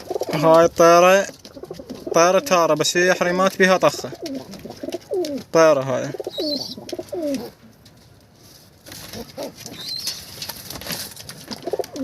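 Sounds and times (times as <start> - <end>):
wing flaps and rustling: 0.0 - 5.6, 6.2 - 12.0
pigeons cooing: 0.0 - 7.6, 9.0 - 10.3, 11.4 - 12.0
short high squeaks: 9.7 - 10.3.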